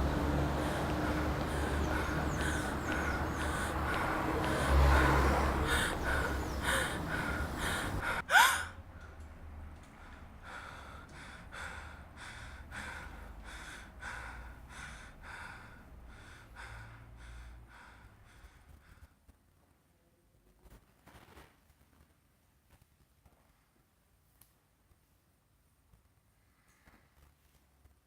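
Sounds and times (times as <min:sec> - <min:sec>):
person breathing heavily: 0:00.0 - 0:08.7, 0:09.9 - 0:19.2
person gasping: 0:00.1 - 0:08.8.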